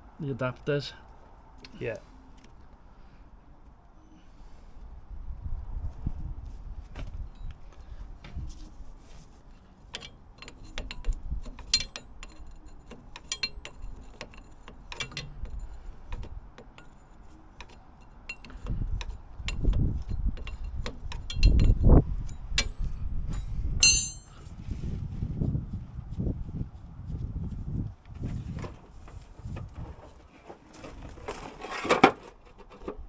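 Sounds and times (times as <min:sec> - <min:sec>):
metallic clinks and taps: 0:10.0 - 0:17.0, 0:17.6 - 0:24.4
bright ringing metal clink: 0:21.3 - 0:24.4.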